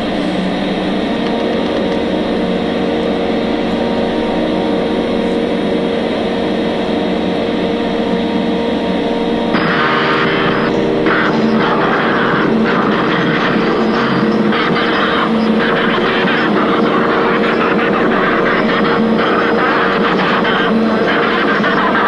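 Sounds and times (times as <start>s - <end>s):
loud drone with low tones: 0.0s - 22.0s
harsh high noise: 9.5s - 22.0s.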